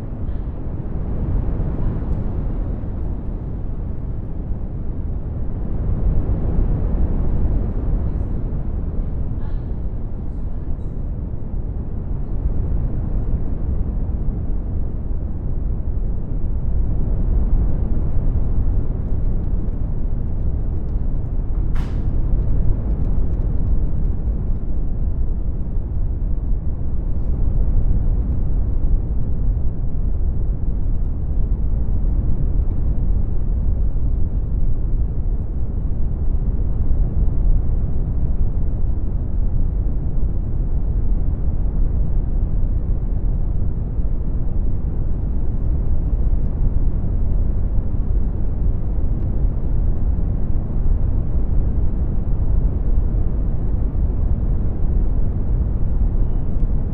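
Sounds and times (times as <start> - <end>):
deep rumbling brown noise: 0.0 - 56.9.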